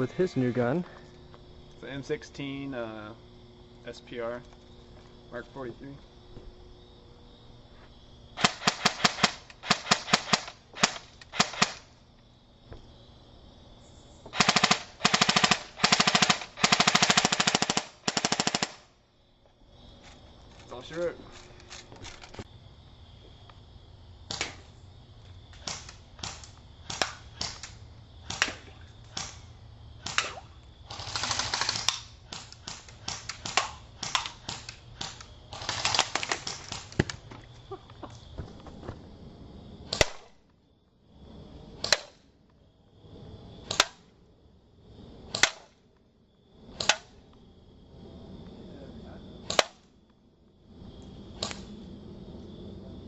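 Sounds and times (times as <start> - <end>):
airsoft gun firing: 8.4 - 11.9, 14.3 - 18.9, 31.0 - 37.0, 39.9 - 40.3.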